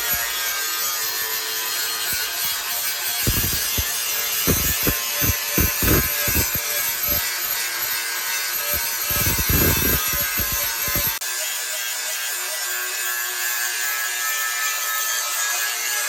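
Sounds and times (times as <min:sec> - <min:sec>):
hand tool rasping: 0:02.0 - 0:07.9, 0:08.6 - 0:11.2
steady hiss: 0:03.3 - 0:07.2.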